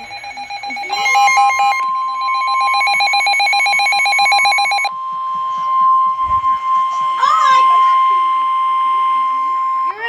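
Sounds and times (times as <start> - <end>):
rapid beeping tone: 0.0 - 4.9
steady electronic alert tones: 0.0 - 4.9
warbling high tones: 0.0 - 9.5.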